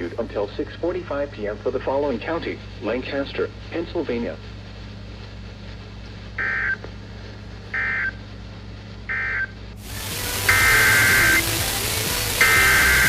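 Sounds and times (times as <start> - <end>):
shrill digital data bursts: 9.1 - 13.0
hiss: 9.7 - 13.0.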